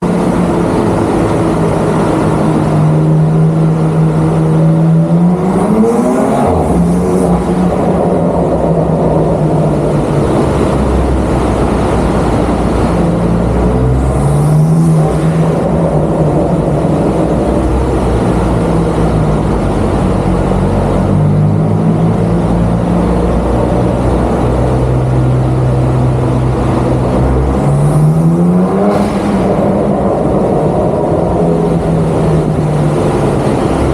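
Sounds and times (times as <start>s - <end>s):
car engine idling and revving: 0.0s - 33.9s.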